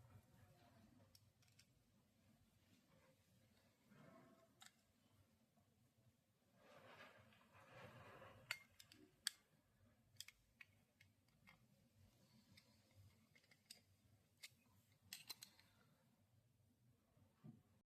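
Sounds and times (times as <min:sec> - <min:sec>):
soft rustle: 0:06.5 - 0:08.5.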